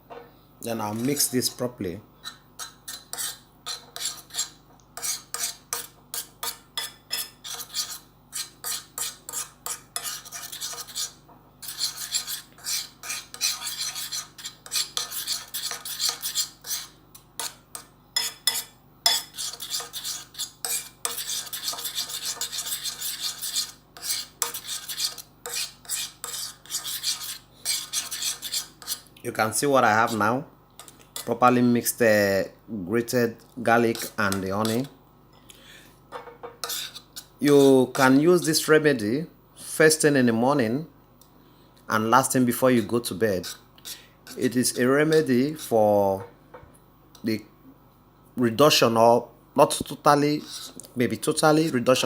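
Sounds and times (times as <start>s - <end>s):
teaspoon stirring and clinking in dish: 2.2s - 29.0s, 33.9s - 34.9s, 36.5s - 38.2s.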